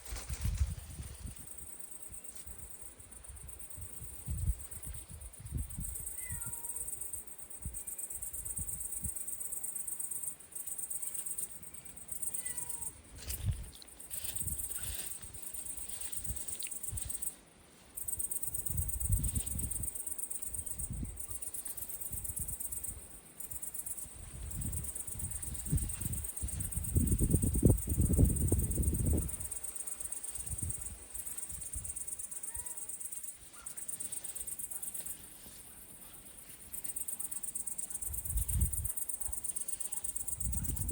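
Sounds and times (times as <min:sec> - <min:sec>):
insects chirring: 0:00.0 - 0:40.9
cat meowing faintly: 0:06.0 - 0:06.9, 0:12.2 - 0:13.0, 0:32.4 - 0:32.9.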